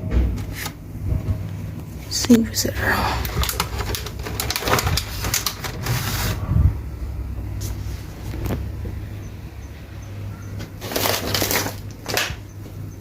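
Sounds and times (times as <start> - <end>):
steady low hum: 0.0 - 13.0
plastic bags rustling: 2.3 - 6.5, 10.6 - 12.4.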